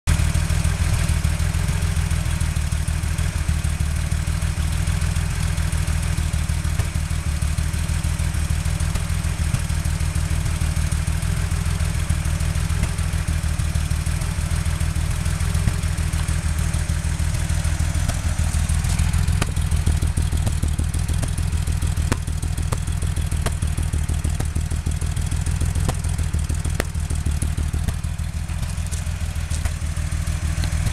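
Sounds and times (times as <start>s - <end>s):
engine idling with misfire: 0.1s - 30.9s
light rapid ticking: 14.2s - 30.9s.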